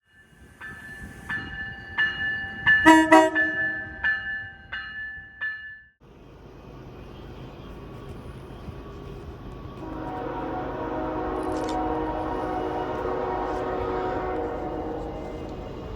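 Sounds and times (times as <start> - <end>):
locomotive air horn blasts: 2.8 - 3.6, 9.8 - 15.6.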